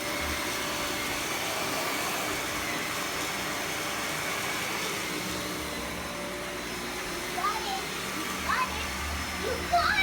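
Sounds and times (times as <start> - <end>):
vacuum cleaner running: 0.0 - 10.0.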